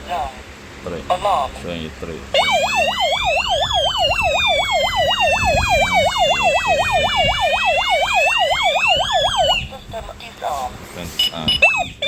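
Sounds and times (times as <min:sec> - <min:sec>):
fire alarm warbling sweep: 0:02.3 - 0:09.7, 0:11.5 - 0:12.0
rising and falling alarm tone: 0:02.4 - 0:09.7, 0:11.4 - 0:12.0.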